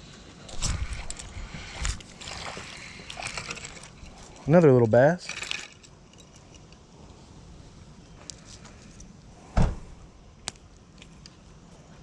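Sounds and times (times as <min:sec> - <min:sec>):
dull thump: 0:09.6 - 0:10.0.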